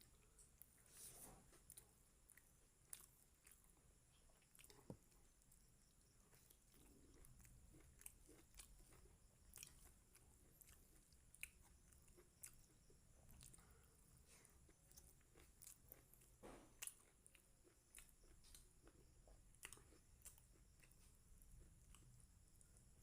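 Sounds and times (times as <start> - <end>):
person chewing close-up: 0.0 - 23.0.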